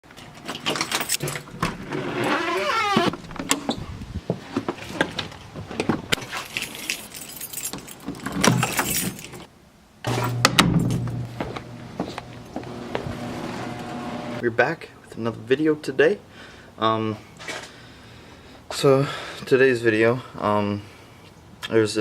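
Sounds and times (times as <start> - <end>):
falling glide: 11.7 - 14.4.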